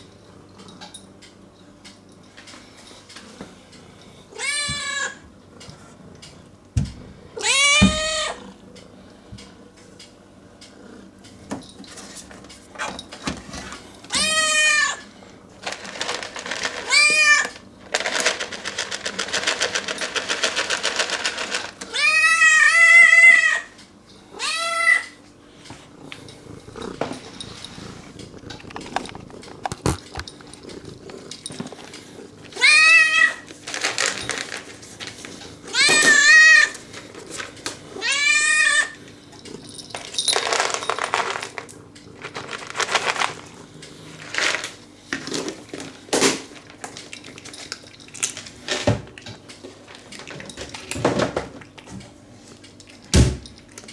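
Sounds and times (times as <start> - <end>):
cat meowing: 32.6 - 33.4.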